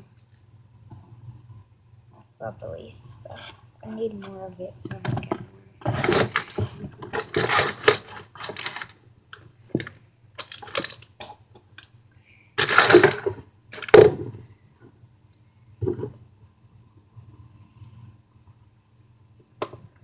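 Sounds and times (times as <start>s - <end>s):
plastic packaging crinkling: 4.8s - 11.9s, 12.6s - 14.4s.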